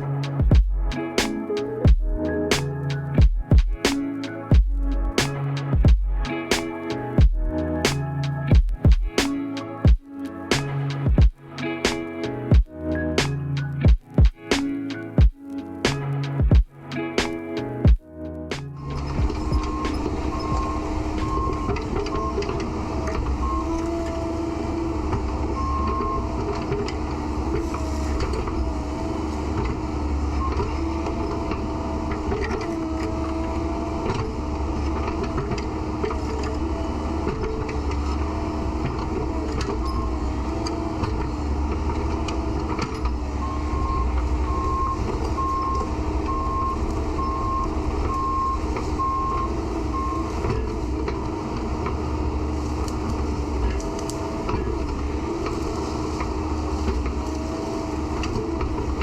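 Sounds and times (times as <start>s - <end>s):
excavator diesel engine running: 0.0s - 9.8s, 18.5s - 59.0s
travel alarm beeping: 18.8s - 27.1s, 30.0s - 32.3s, 39.4s - 41.6s, 43.0s - 50.8s.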